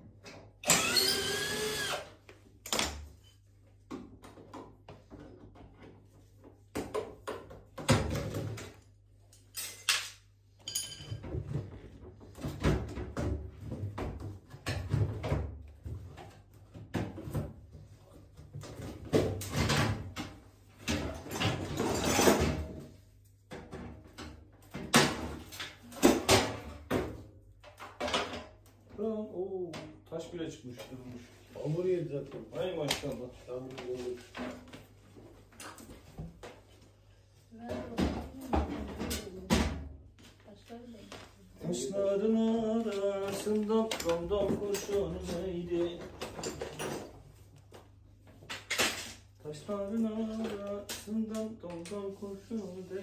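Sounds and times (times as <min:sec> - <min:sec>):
power drill running: 0:00.6 - 0:02.1.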